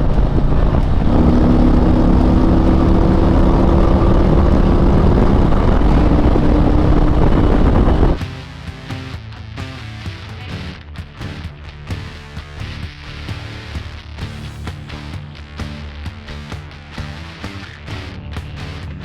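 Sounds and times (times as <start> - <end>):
motorcycle engine running: 0.0 - 8.2.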